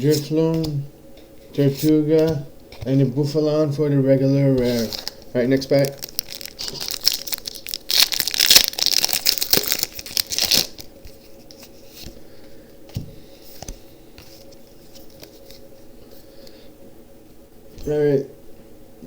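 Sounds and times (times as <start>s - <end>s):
foil wrapper crinkling: 4.6s - 11.2s.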